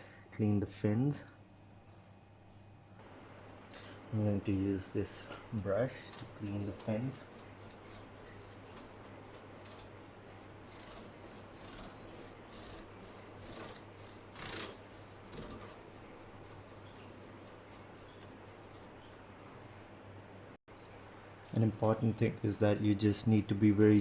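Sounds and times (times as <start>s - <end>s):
brush scrubbing metal fins: 5.4s - 19.1s.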